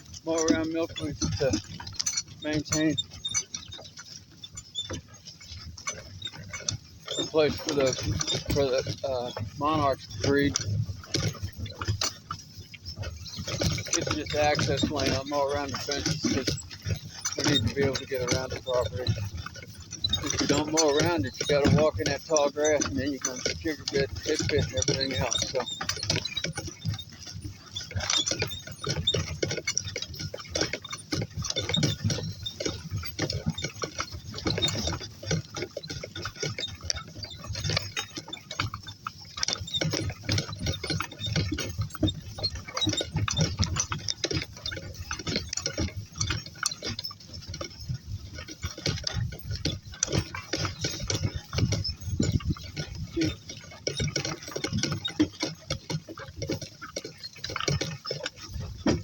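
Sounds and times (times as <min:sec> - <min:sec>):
clicking and rattling: 0:00.0 - 0:59.0.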